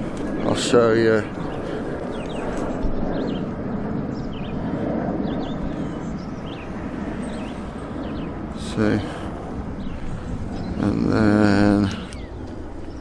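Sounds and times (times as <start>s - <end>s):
small birds chirping: 0.0s - 13.0s
steady rushing noise: 0.0s - 13.0s.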